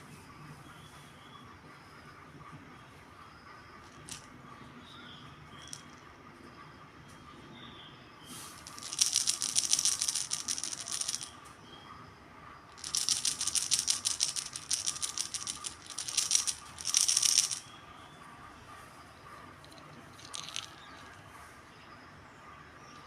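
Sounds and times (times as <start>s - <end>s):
baby rattle clicking: 3.8s - 4.3s, 5.6s - 6.0s, 8.6s - 11.3s, 12.7s - 17.7s, 19.6s - 21.2s.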